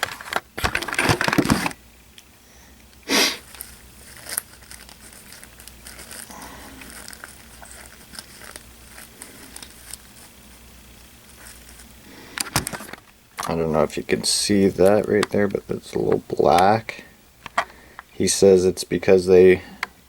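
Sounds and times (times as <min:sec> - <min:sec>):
figure and cloth rustling: 0:03.4 - 0:13.0.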